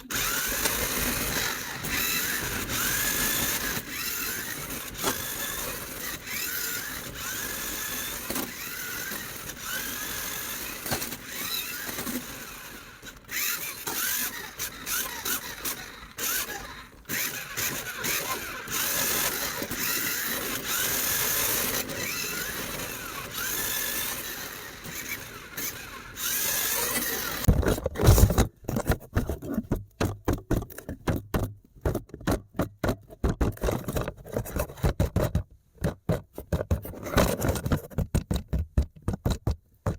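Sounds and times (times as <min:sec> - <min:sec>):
toy electric motor whirring: 0:00.0 - 0:28.5
rapid clicks and knocks: 0:26.9 - 0:39.9.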